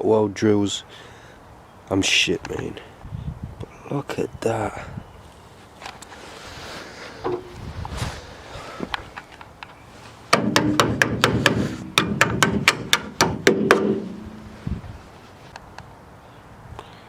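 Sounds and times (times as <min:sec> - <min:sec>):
hammer striking metal: 0:10.3 - 0:14.5.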